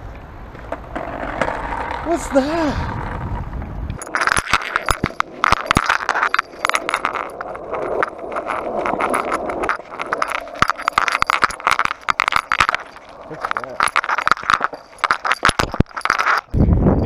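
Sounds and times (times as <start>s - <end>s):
skateboard wheels rolling on concrete: 0.0s - 17.0s
skateboard clicks and rattles: 0.5s - 16.6s.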